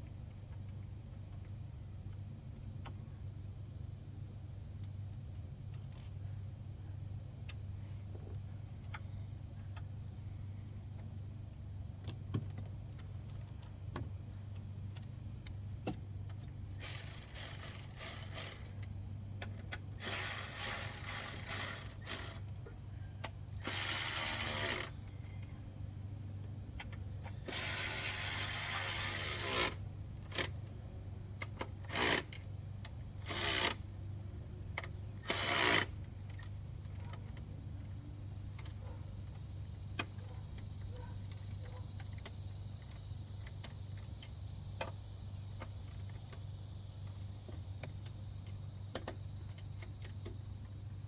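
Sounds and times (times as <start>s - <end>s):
steady low hum: 0.0s - 51.0s
ratchet wrench clicking: 16.8s - 18.9s, 20.0s - 22.5s, 23.6s - 25.0s, 33.2s - 33.8s, 34.8s - 37.2s, 45.6s - 46.6s.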